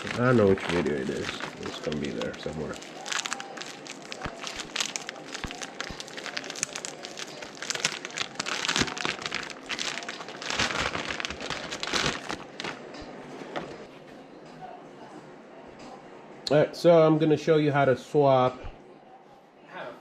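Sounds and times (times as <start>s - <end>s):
rustling crinkling: 0.0s - 13.9s.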